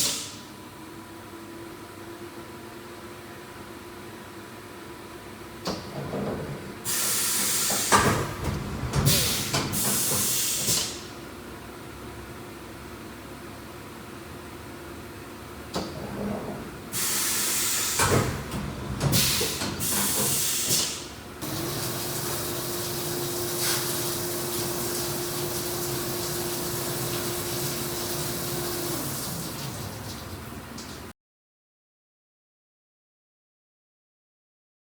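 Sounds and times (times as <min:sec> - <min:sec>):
machine hissing in bursts: 0:06.8 - 0:08.4, 0:09.0 - 0:11.1, 0:16.9 - 0:18.5, 0:19.1 - 0:30.0.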